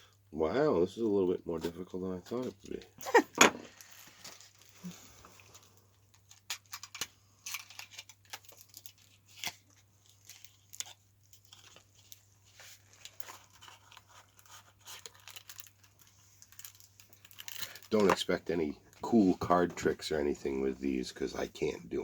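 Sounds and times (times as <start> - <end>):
wrapper tearing and crinkling: 3.7 - 18.4.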